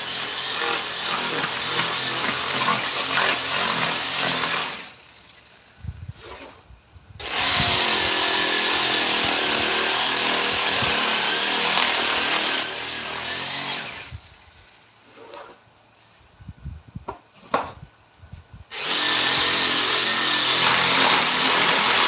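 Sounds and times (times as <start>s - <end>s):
power tool cutting wood: 0.0s - 5.2s, 7.2s - 14.2s, 18.7s - 22.0s.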